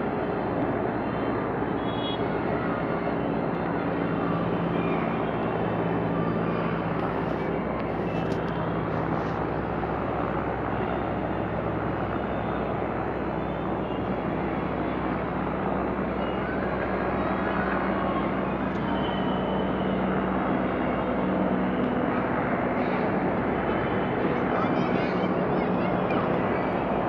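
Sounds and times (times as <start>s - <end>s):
helicopter rotor and engine drone: 0.0s - 27.0s.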